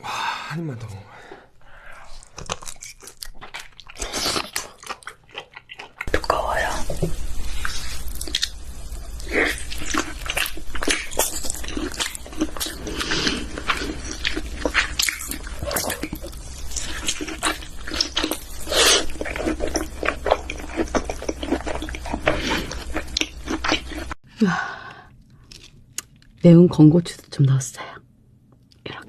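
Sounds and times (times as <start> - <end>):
wet chewing mouth sounds: 2.0 - 6.6.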